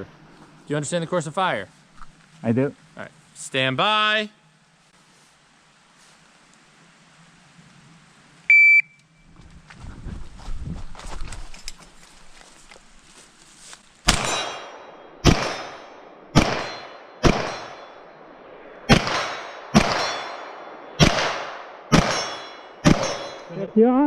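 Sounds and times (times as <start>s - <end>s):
gunshots: 14.0s - 23.5s
bullets ringing on steel targets: 14.1s - 18.1s, 18.9s - 23.7s.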